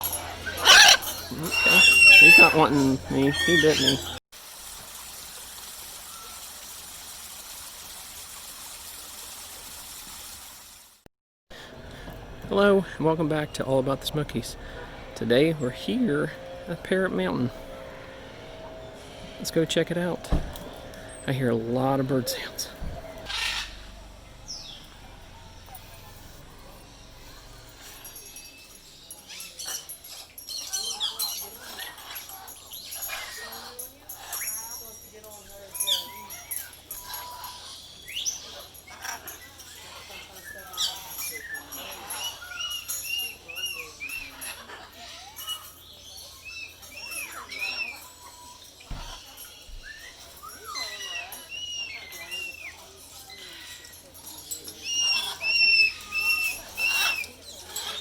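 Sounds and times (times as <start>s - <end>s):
parrots squawking and chattering: 0.0s - 4.2s, 11.6s - 58.0s
low rumble: 11.6s - 27.8s.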